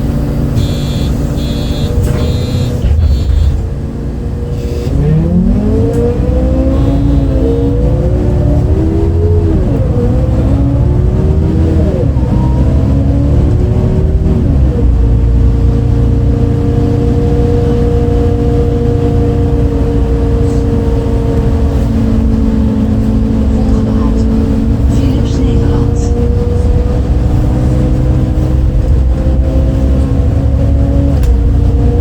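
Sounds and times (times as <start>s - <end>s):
diesel bus engine pulling away: 0.0s - 32.0s
automatic gearbox shifting up: 0.5s - 3.8s.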